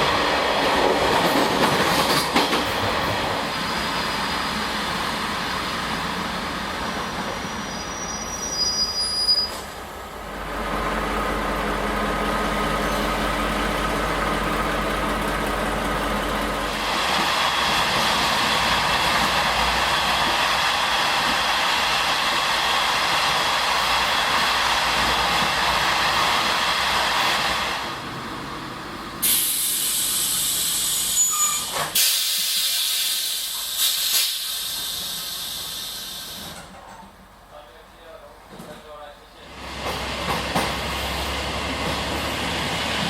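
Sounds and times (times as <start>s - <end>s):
train air brakes hissing: 29.2s - 36.8s.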